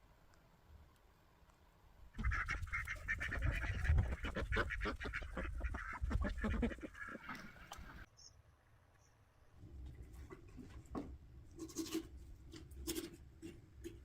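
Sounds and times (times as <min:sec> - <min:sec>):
waterfowl quacking and honking: 0:02.2 - 0:08.1.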